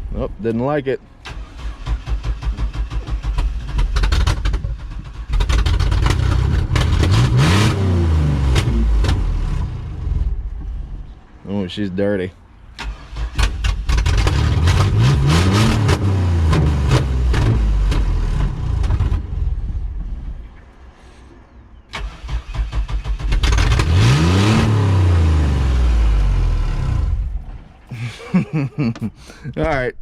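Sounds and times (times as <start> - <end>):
car engine starting and sputtering: 1.0 - 11.4, 12.5 - 29.9.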